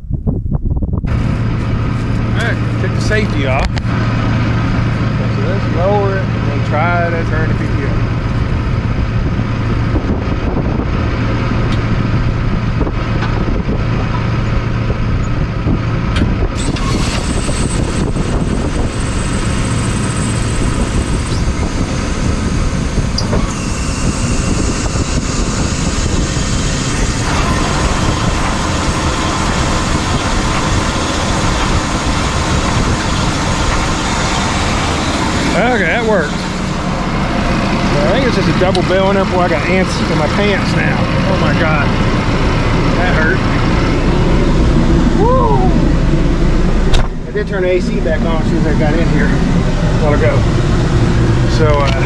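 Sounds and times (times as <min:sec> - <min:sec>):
tractor driving a baler: 0:01.1 - 0:52.0.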